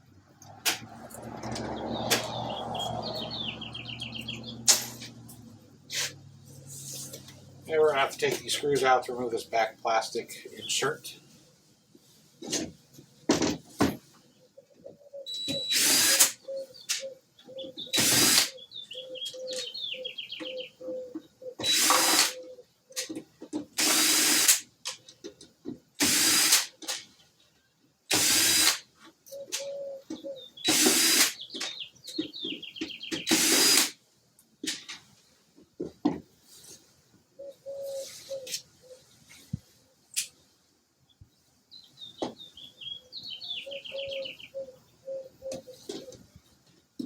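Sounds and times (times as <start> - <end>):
cordless drill running: 15.6 - 16.3, 18.0 - 18.5, 21.6 - 22.3, 23.8 - 24.6, 26.0 - 26.7, 28.1 - 28.8, 30.7 - 31.3, 33.3 - 33.9.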